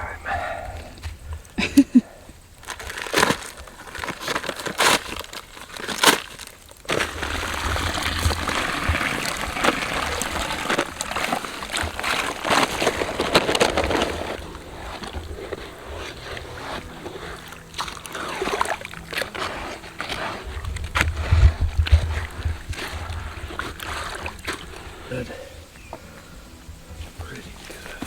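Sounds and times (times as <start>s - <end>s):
gritty mix stirred by hand: 2.6s - 26.3s.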